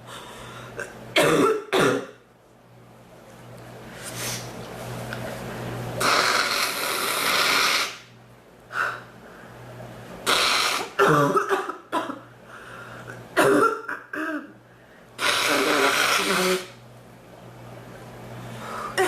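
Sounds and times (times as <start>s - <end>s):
woman coughing: 0.8s - 2.2s, 10.8s - 12.3s, 13.4s - 14.6s.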